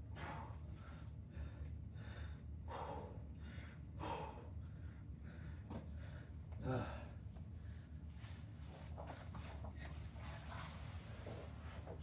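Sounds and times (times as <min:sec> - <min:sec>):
man breathing hard: 0:01.4 - 0:06.1.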